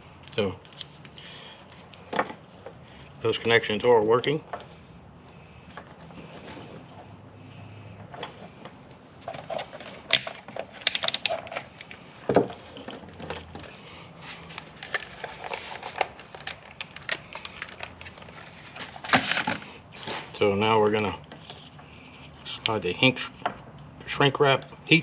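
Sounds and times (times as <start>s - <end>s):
small parts handling clicks and knocks: 0.3s - 3.2s, 8.0s - 19.6s.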